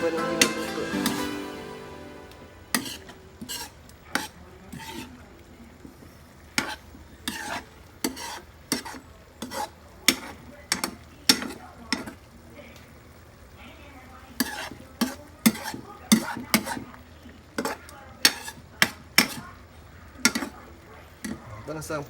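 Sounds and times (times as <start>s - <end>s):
faint sizzle: 0.0s - 22.0s
utensil scraping pan: 2.7s - 5.2s, 6.6s - 12.2s, 14.4s - 16.8s, 17.6s - 19.5s, 20.3s - 20.6s.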